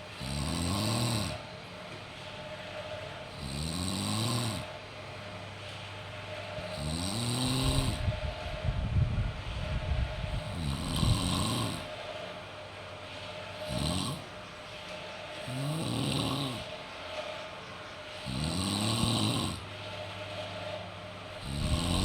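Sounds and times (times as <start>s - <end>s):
person snoring: 0.2s - 1.4s, 6.8s - 8.0s, 10.5s - 11.9s, 13.7s - 14.2s, 15.5s - 16.7s, 18.3s - 19.6s, 21.4s - 22.0s.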